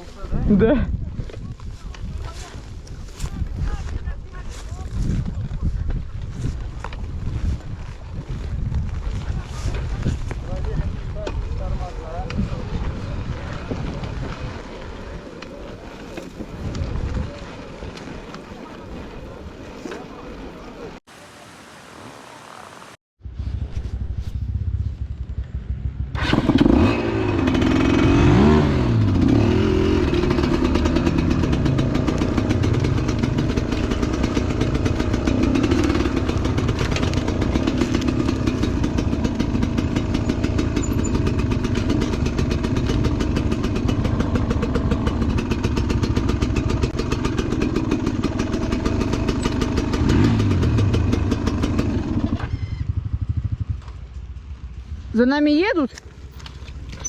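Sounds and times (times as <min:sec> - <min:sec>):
motorcycle engine revving: 0:22.4 - 0:54.2.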